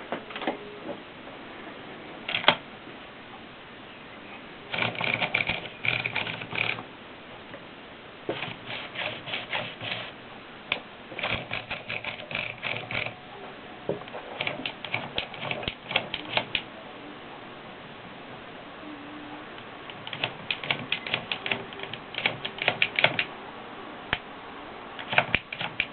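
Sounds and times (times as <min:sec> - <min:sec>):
manual typewriter keystrokes: 0:02.3 - 0:02.6, 0:04.7 - 0:06.8, 0:11.2 - 0:13.2, 0:14.1 - 0:16.7, 0:19.9 - 0:23.3, 0:25.0 - 0:25.9.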